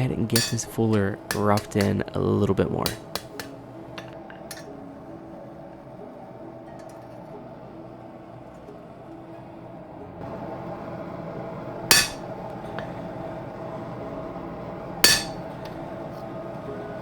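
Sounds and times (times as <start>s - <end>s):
steady hum: 0.0s - 17.0s
ringing hammer blows on steel: 0.4s - 2.0s, 11.9s - 12.3s, 15.0s - 15.5s.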